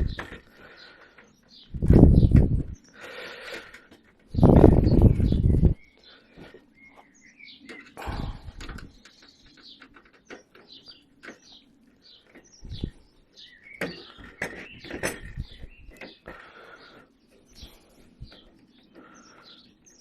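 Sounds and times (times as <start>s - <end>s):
small birds chirping: 0.0s - 20.0s.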